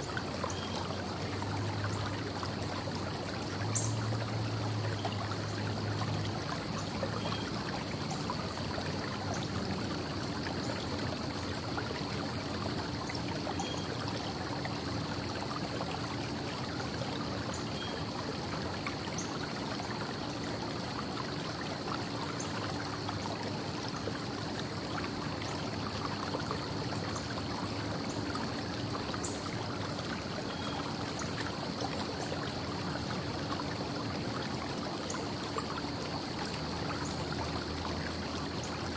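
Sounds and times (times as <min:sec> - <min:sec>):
constant high hum: 0:00.0 - 0:38.9.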